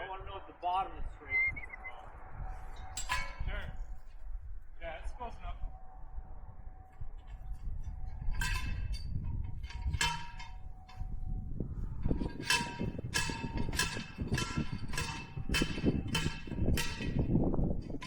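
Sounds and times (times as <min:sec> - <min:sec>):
hammer clanging on steel post: 0:09.6 - 0:11.1, 0:12.1 - 0:18.0.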